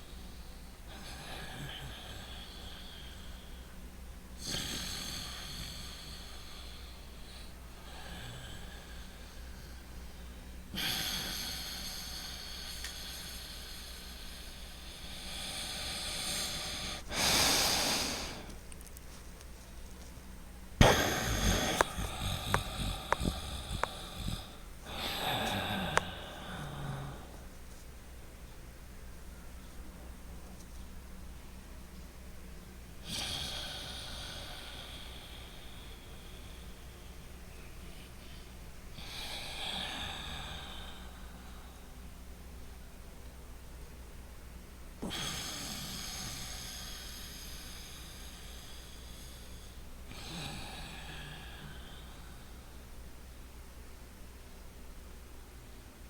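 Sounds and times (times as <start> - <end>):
person breathing through the nose: 4.4 - 18.6, 20.8 - 27.5, 45.0 - 52.6
sharp snorts and sniffs: 20.8 - 26.1.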